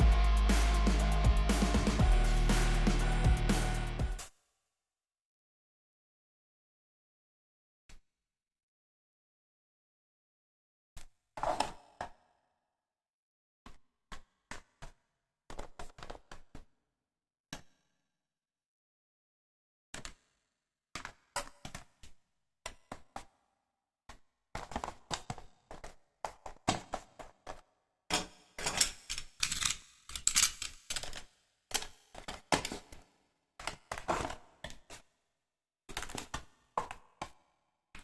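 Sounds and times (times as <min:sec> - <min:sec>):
toy pistol clicking and clattering: 0:29.0 - 0:31.2.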